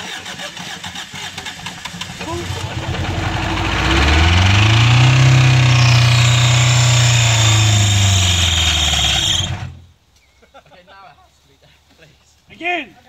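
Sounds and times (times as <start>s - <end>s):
car engine revving hard: 1.8s - 9.9s.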